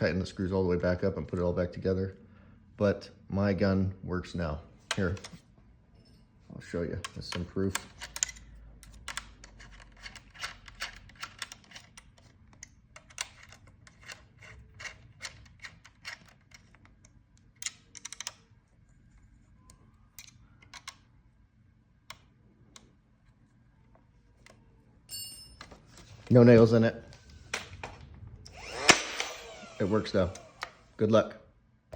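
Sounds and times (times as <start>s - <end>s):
nailer clicking: 28.5s - 30.8s.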